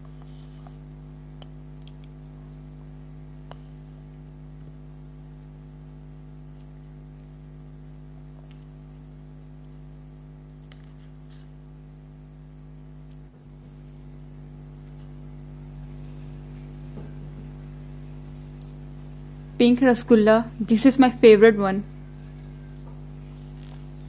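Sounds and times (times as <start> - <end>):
electrical hum: 0.0 - 24.0.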